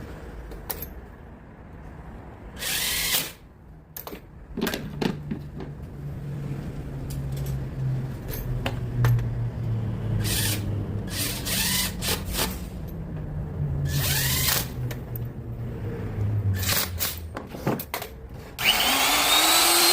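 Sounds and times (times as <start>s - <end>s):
power drill running: 18.6s - 19.9s.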